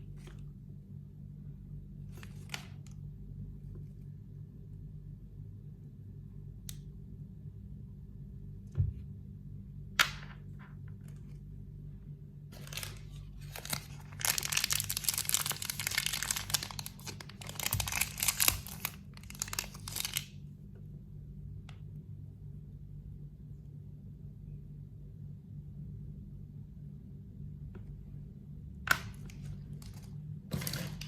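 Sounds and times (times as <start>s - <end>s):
packaging crinkling and tearing: 12.6s - 20.4s, 29.0s - 31.0s.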